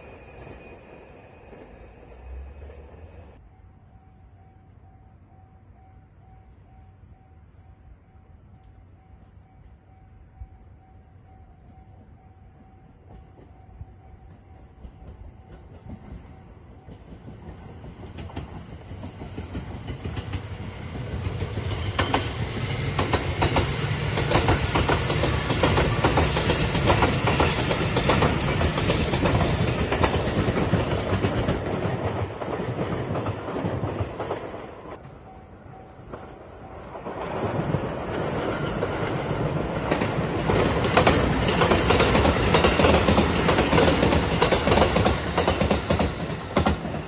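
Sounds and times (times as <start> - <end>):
passenger train passing: 0.0 - 47.0
wheels clicking over rail joints: 14.3 - 47.0.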